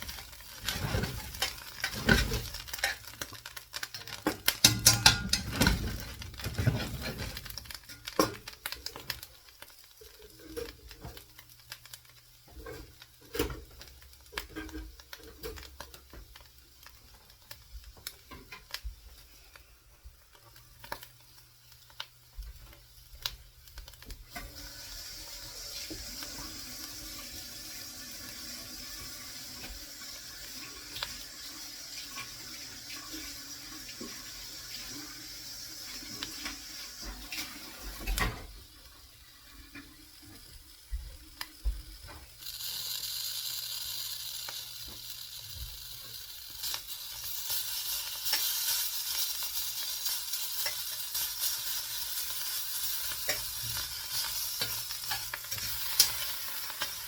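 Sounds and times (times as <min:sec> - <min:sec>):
kitchen utensils clicking: 0:00.1 - 0:09.1.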